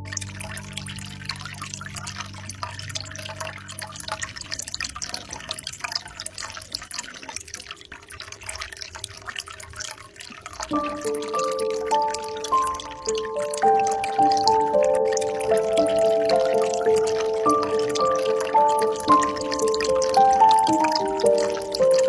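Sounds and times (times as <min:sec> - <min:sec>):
gentle melody: 0:00.0 - 0:05.1, 0:10.6 - 0:22.0
soft music tones: 0:00.0 - 0:05.1, 0:10.6 - 0:22.0
water trickling from a spout: 0:00.0 - 0:22.0.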